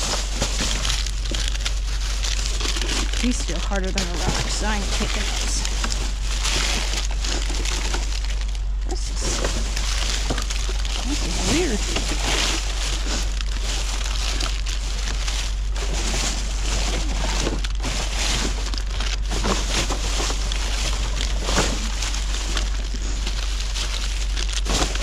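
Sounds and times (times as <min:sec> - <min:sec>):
low background rumble: 0:00.0 - 0:25.0
plastic bags crinkling: 0:00.0 - 0:25.0.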